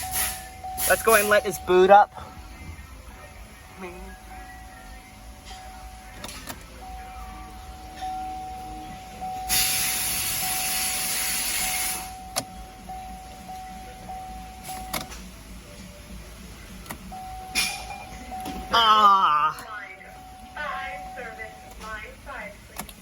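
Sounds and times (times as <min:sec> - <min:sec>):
loud hiss: 0:00.0 - 0:01.6, 0:09.5 - 0:12.2
car warning chime: 0:00.0 - 0:15.1, 0:16.7 - 0:23.0.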